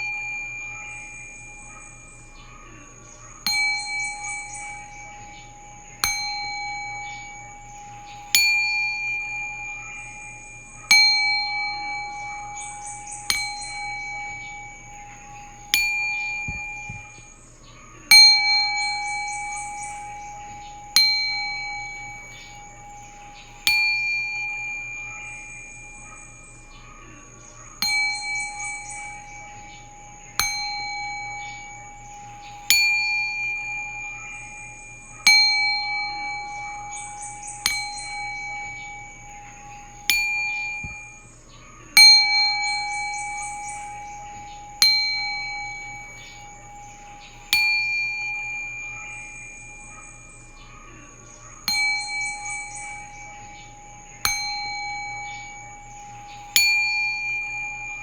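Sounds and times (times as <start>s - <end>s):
faint low drone: 0.0s - 58.0s
singing bowls ringing: 0.0s - 58.0s.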